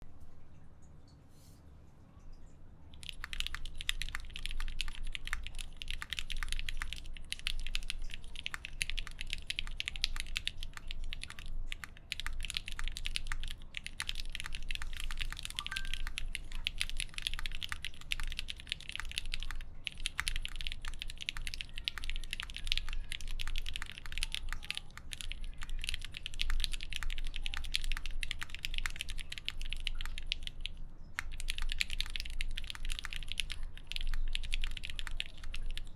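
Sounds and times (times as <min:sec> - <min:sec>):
mechanical keyboard typing: 0:02.9 - 0:35.9.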